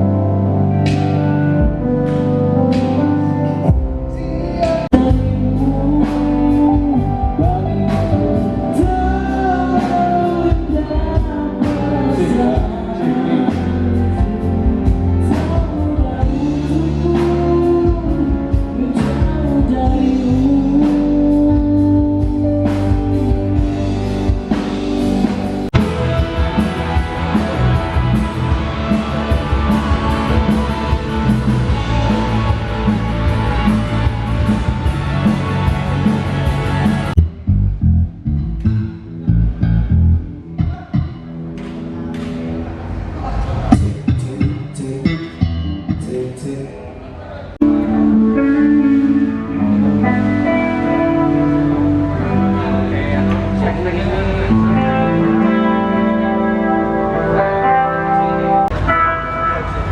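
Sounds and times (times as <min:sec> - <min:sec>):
pop-rock band playing: 0:00.0 - 0:37.3, 0:47.6 - 0:59.9
lead vocal singing: 0:04.1 - 0:24.3.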